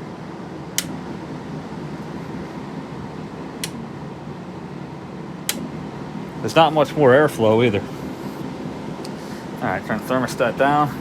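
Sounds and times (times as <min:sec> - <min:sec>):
air conditioner fan running: 0:00.0 - 0:11.0.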